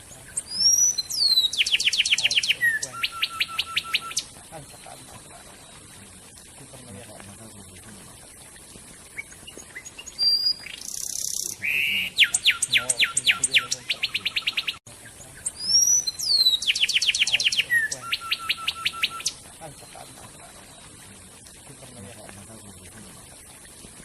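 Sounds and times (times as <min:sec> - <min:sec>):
songbird whistling and trilling: 0:00.2 - 0:05.9, 0:09.1 - 0:20.9.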